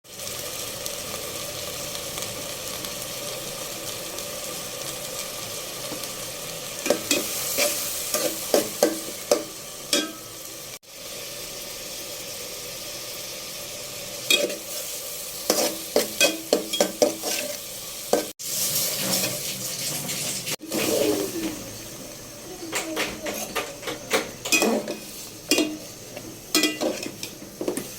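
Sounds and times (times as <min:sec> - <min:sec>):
frying in oil sizzling: 0:00.0 - 0:27.9
spatula scraping a pan: 0:06.9 - 0:10.2, 0:14.3 - 0:21.9, 0:23.0 - 0:27.9.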